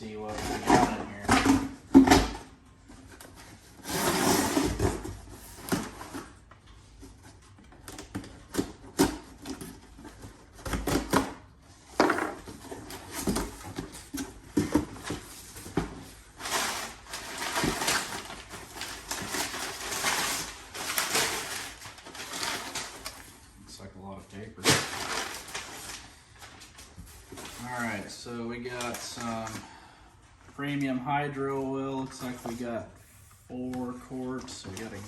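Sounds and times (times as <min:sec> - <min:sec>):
packing paper rustling: 0:12.3 - 0:23.5, 0:24.6 - 0:29.8.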